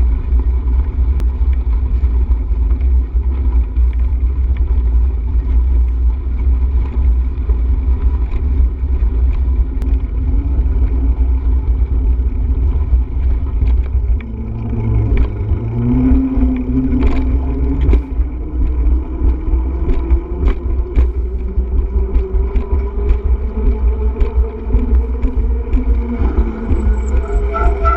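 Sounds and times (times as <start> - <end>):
wind buffeting microphone: 0.0 - 27.9.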